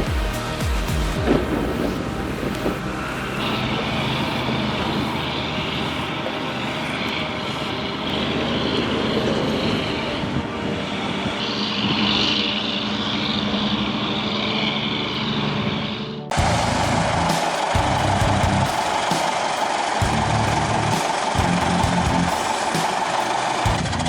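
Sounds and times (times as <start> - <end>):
heavy machine engine running: 16.4 - 24.0.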